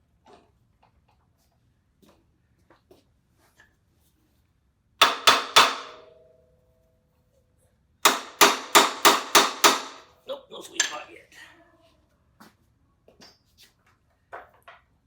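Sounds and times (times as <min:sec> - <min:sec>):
hammer striking metal: 0:05.0 - 0:06.4, 0:08.0 - 0:10.1
metal ringing: 0:05.0 - 0:06.6.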